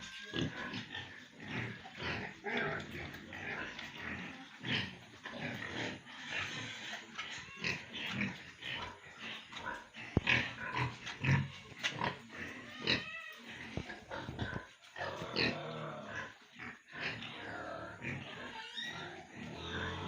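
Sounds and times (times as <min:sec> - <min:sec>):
pig squealing: 0:00.0 - 0:03.8, 0:05.5 - 0:20.0
pigs grunting: 0:00.0 - 0:20.0.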